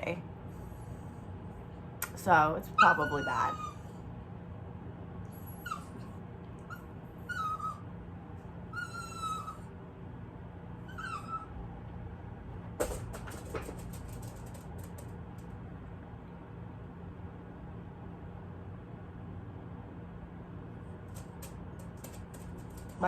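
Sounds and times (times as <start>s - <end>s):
steady low hum: 0.0s - 23.0s
dog whimpering: 2.8s - 3.9s, 5.4s - 7.9s, 8.7s - 9.8s, 10.8s - 11.6s
clicks and rattles: 12.8s - 15.5s, 21.1s - 23.0s.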